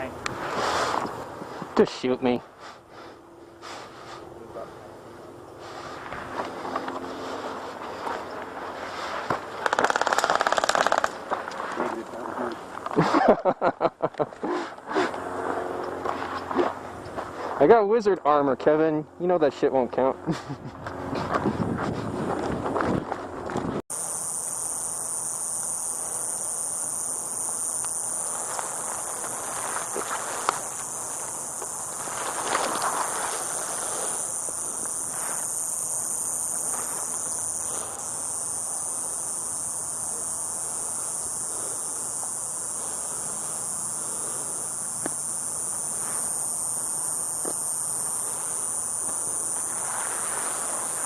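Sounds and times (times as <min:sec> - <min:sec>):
insects droning: 0:00.0 - 0:51.0
airsoft rifle full-auto burst: 0:09.6 - 0:11.2.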